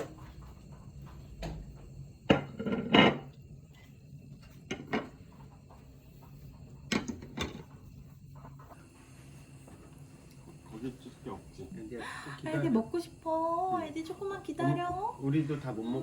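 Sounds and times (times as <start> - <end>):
hard objects knocking and clattering: 1.4 - 3.4, 4.6 - 5.3, 6.8 - 7.8.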